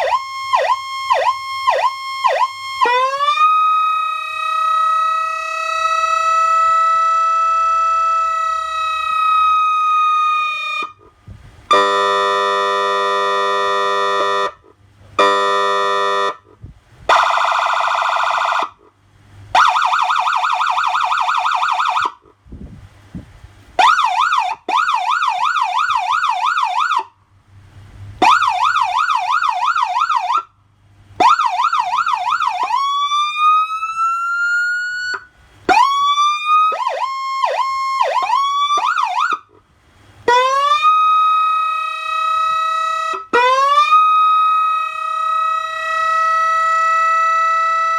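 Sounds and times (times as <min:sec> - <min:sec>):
siren wail: 0:00.0 - 0:11.1, 0:17.1 - 0:18.9, 0:19.5 - 0:22.3, 0:23.8 - 0:27.1, 0:28.2 - 0:30.5, 0:31.2 - 0:39.6, 0:40.3 - 0:47.9
siren yelp sweeps: 0:00.0 - 0:11.1, 0:17.1 - 0:18.9, 0:19.5 - 0:22.3, 0:28.2 - 0:30.5, 0:31.2 - 0:39.5, 0:40.3 - 0:47.9
buzzy horn tone: 0:11.7 - 0:14.6
warbling siren tones: 0:17.1 - 0:18.7, 0:31.2 - 0:39.4.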